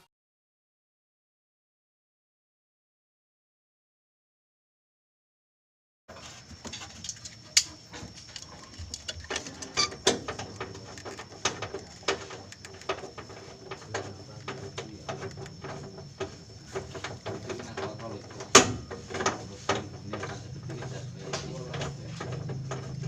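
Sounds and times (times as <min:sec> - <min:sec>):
metal engine parts being handled: 0:06.1 - 0:23.0
clicks and knocks of hand tools: 0:06.6 - 0:23.0.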